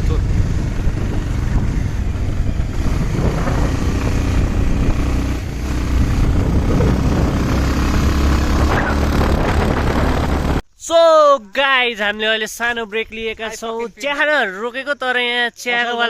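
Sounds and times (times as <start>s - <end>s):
motorcycle engine running: 0.0s - 10.6s
wind rumble on microphone: 0.0s - 10.6s.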